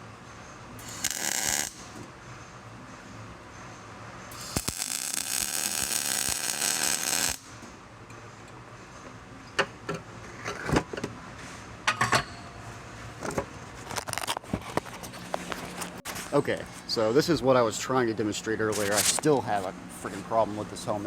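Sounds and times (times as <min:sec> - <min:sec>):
welding arc crackling: 0:00.8 - 0:02.0, 0:04.3 - 0:07.6.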